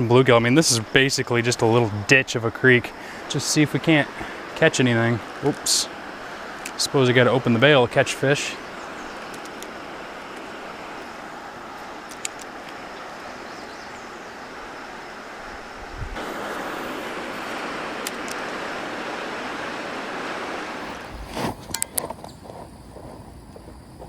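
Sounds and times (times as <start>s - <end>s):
faint clicks: 9.2s - 9.7s, 11.8s - 12.8s.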